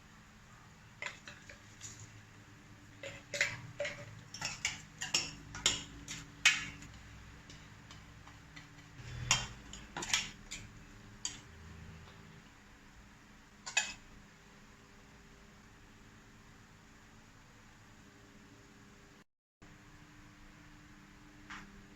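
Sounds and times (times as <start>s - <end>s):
utensils clinking against dishes: 3.0s - 7.0s.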